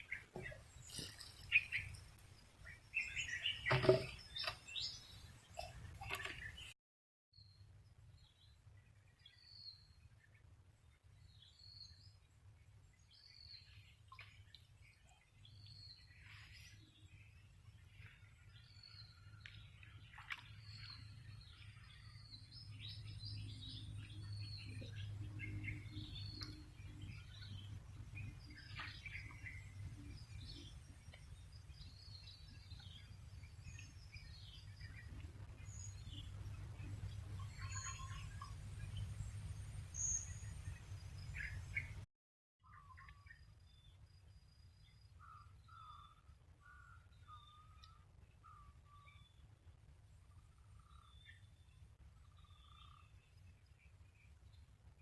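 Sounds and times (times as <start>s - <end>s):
birds chirping: 0.0s - 6.7s, 18.6s - 42.0s.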